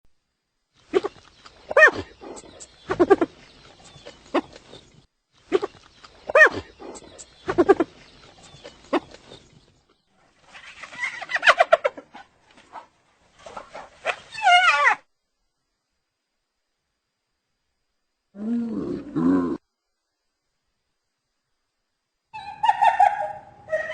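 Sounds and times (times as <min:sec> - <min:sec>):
hyena laughing calls: 0:00.9 - 0:04.8, 0:05.5 - 0:09.4, 0:10.8 - 0:12.3, 0:22.4 - 0:23.9.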